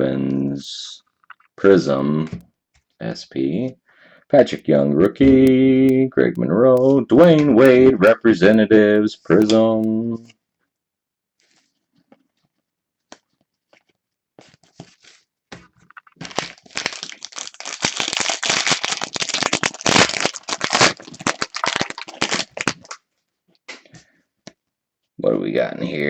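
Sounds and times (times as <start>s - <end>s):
wrapper crinkling: 15.8s - 23.0s.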